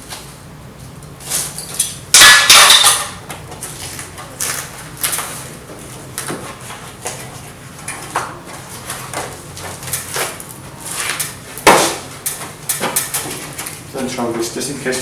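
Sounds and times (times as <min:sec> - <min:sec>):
tools clicking and rattling on plastic: 0:12.2 - 0:13.8.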